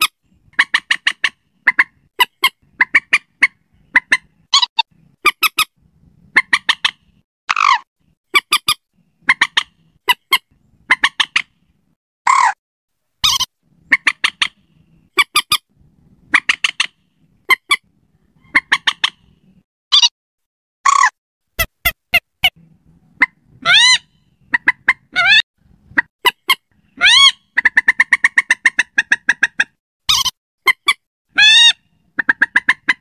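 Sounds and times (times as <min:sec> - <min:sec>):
moorhen calling: 0:00.0 - 0:05.7, 0:06.3 - 0:11.6, 0:16.3 - 0:19.5, 0:23.2 - 0:33.0.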